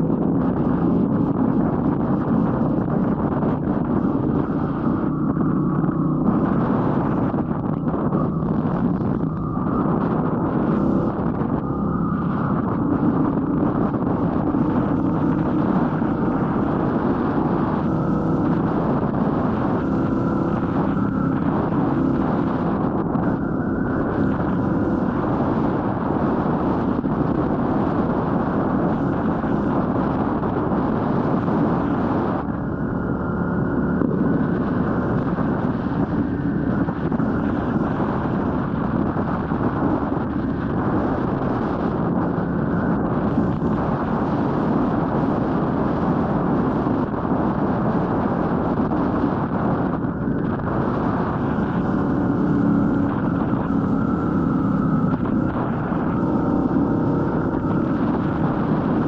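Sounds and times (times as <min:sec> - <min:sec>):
motorcycle engine running: 0:00.0 - 0:59.0
wind rush on microphone: 0:00.0 - 0:59.0.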